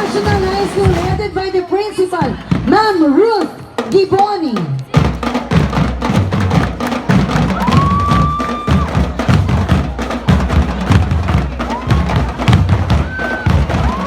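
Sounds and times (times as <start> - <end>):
drums pounding a steady beat: 0.0 - 14.0.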